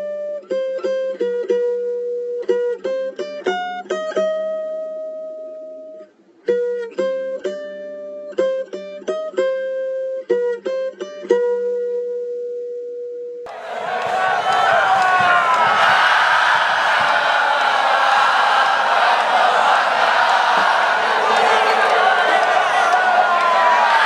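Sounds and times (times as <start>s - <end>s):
loud crowd noise: 13.5s - 24.0s.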